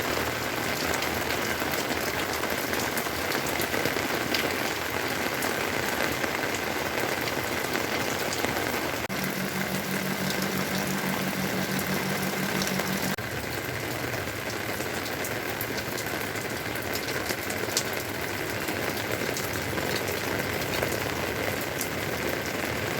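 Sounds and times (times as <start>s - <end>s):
steady rain falling: 0.0s - 22.9s
low pulsing hum: 9.1s - 13.2s.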